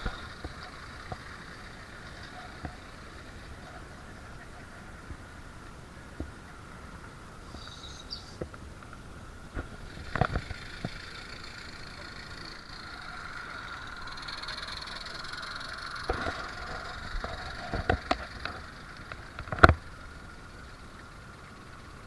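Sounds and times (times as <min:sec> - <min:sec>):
model locomotive humming: 0:00.0 - 0:22.0
sharp clicks and knocks: 0:14.0 - 0:20.0.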